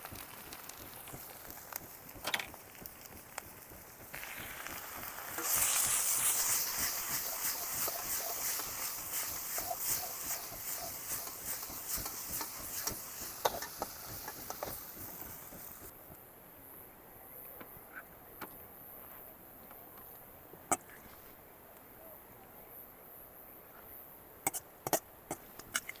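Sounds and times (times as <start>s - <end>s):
food sizzling in a pan: 0.0s - 15.9s.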